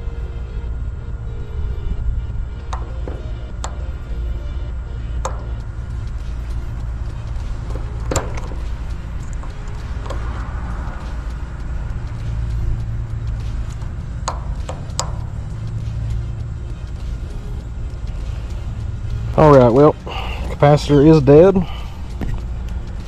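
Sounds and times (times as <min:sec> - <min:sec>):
low rumble: 0:00.0 - 0:23.0
sharp clicks and taps: 0:07.6 - 0:15.9.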